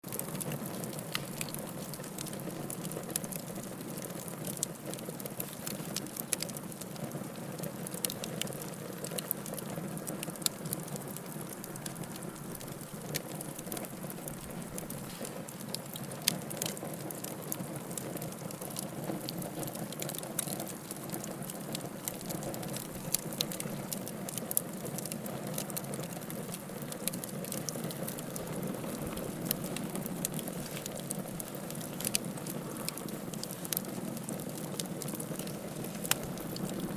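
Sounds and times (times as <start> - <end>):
bonfire wood crackling: 0.0 - 36.9
flames hissing: 0.1 - 8.7, 10.1 - 16.7, 26.0 - 36.9.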